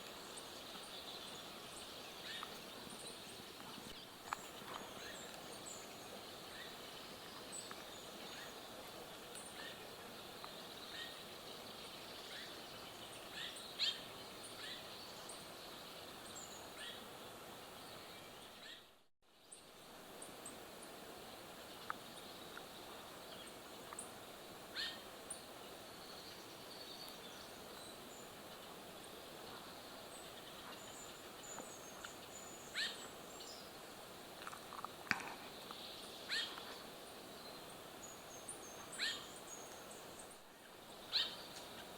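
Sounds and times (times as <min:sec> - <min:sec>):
steady forest hiss: 0:00.0 - 0:41.9
bird chirps: 0:35.4 - 0:40.4, 0:41.0 - 0:41.9.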